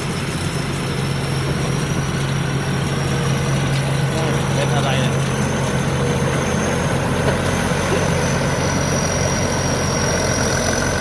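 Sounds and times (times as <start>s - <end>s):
diesel engine deep hum: 0.0s - 11.0s
high-pitched engine whine: 0.0s - 11.0s.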